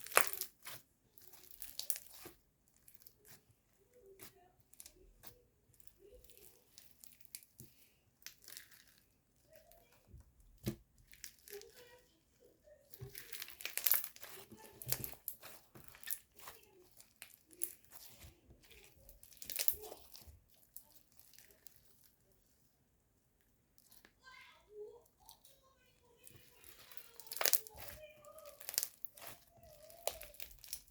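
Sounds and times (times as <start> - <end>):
crunchy slime crackling and popping: 0.0 - 3.5, 4.1 - 9.7, 10.6 - 12.0, 12.9 - 22.1, 26.2 - 30.9.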